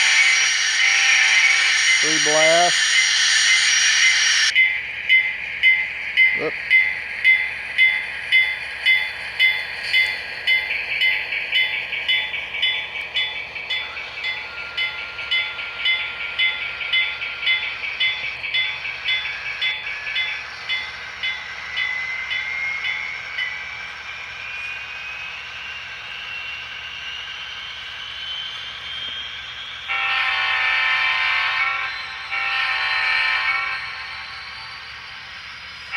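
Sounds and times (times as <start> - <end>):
locomotive bell ringing: 0.0 - 35.9
locomotive horn blast: 29.9 - 33.9.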